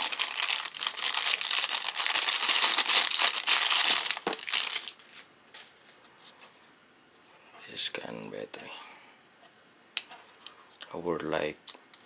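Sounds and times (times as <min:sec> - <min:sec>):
packaging crinkling: 0:00.0 - 0:05.8.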